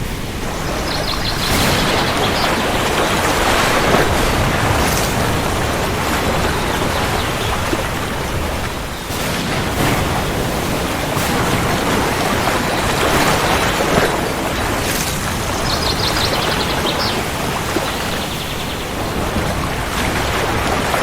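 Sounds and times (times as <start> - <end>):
heavy rain: 0.0 - 21.0
thunder rumbling: 0.0 - 21.0.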